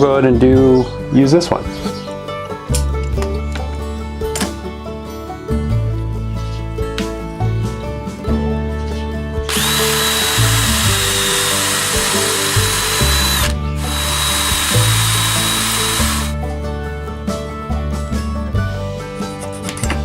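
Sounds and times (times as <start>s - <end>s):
small power tool whining: 9.5s - 16.4s.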